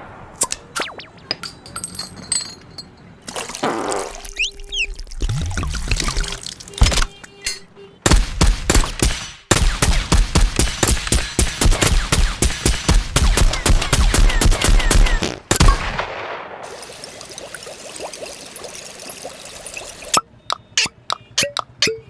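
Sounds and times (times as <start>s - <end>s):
rapid sharp cracks: 8.1s - 16.8s.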